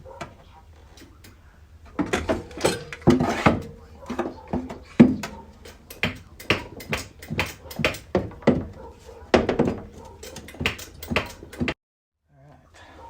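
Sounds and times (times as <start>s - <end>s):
hammer knocking on sheet metal: 2.0s - 11.8s.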